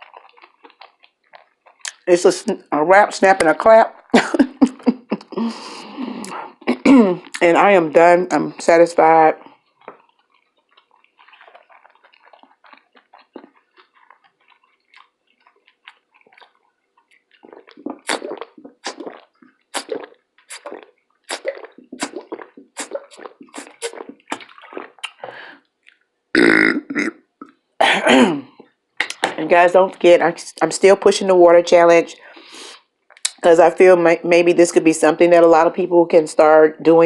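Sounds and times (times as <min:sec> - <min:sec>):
wet mouth smacking: 0:00.0 - 0:02.0, 0:09.4 - 0:26.1, 0:28.6 - 0:29.4, 0:33.1 - 0:33.4
sharp wet clicks: 0:00.0 - 0:02.1, 0:09.4 - 0:26.1, 0:33.1 - 0:33.4.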